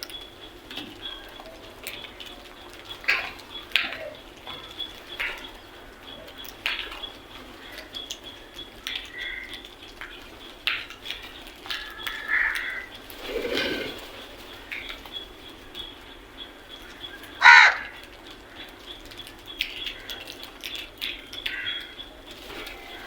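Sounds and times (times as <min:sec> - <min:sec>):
small birds chirping: 0:00.0 - 0:23.0
crows cawing: 0:09.1 - 0:09.6, 0:11.7 - 0:14.0, 0:17.2 - 0:18.0, 0:21.5 - 0:21.9.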